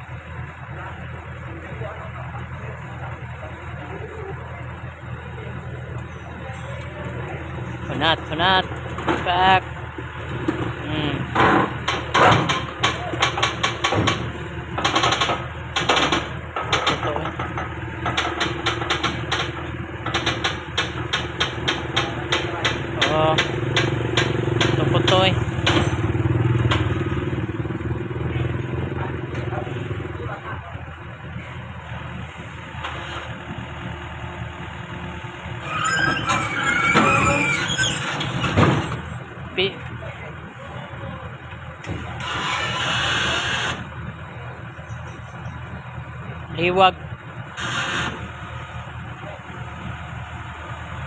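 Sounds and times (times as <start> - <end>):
diesel engine running: 0.0 - 51.0
sharp knocks and clanks: 7.7 - 9.6, 10.3 - 27.5, 35.6 - 40.0, 41.5 - 43.9
wavering high squeal: 35.6 - 38.6.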